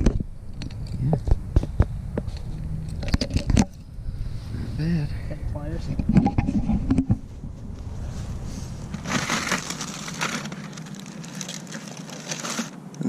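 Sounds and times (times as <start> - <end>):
dense crackling: 0.0 - 13.0
crunching and rustling: 5.8 - 13.0
sharp cracks: 8.8 - 13.0.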